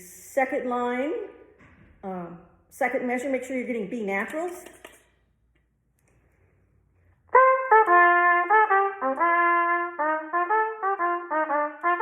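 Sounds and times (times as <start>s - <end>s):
trumpet melody: 7.3s - 12.0s.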